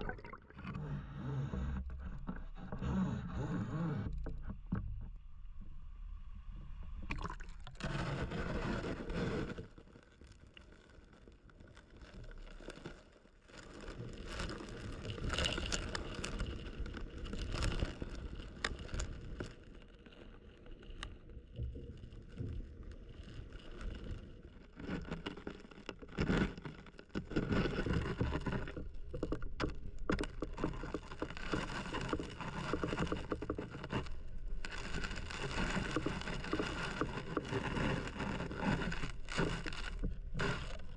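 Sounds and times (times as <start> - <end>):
scrapes and knocks: 24.8 - 40.9.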